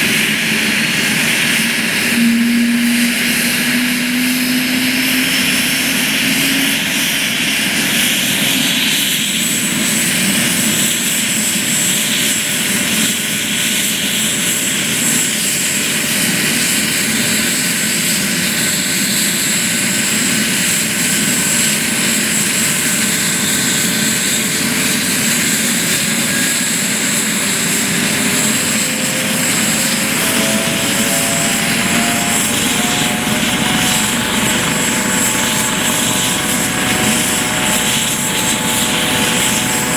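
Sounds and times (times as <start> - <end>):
high turbine whine: 0.0 - 8.2, 26.6 - 39.9
helicopter rotor and turbine noise: 21.5 - 39.9
tones climbing in pitch: 28.2 - 39.9.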